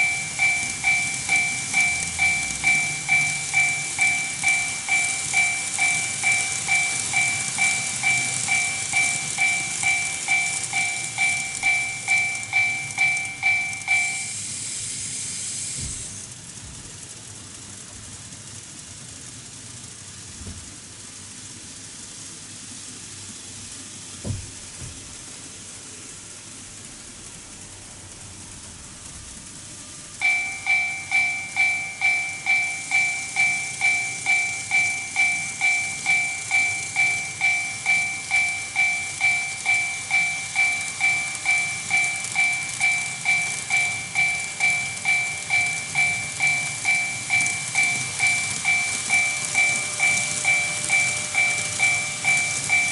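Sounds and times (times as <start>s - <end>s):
electronic crossing bell ringing: 0.0s - 14.4s, 30.2s - 52.9s.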